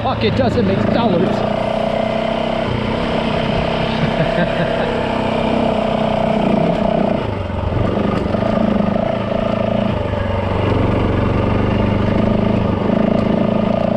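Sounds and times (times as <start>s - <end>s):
dirt bike engine running: 0.0s - 13.9s.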